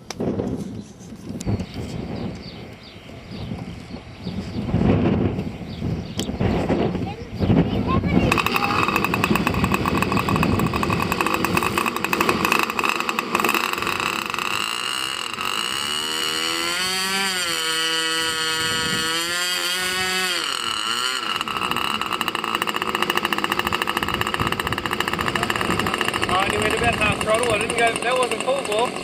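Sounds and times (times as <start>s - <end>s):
wind rumbling on microphone: 0.0s - 12.6s, 18.1s - 20.1s, 21.4s - 27.8s
model airplane engine whining: 8.1s - 29.0s.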